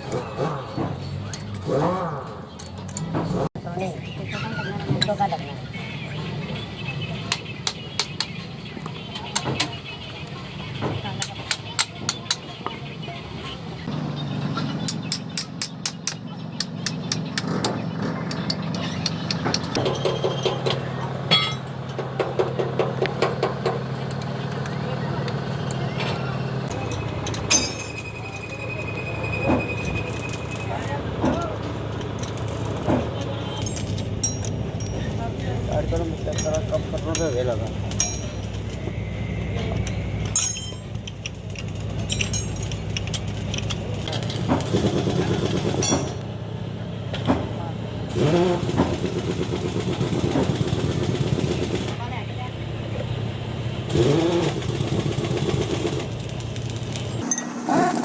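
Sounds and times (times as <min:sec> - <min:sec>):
engine hum: 0:00.0 - 0:58.0
metal tools clinking: 0:01.1 - 0:03.5, 0:14.8 - 0:22.0, 0:26.7 - 0:46.3, 0:54.7 - 0:58.0.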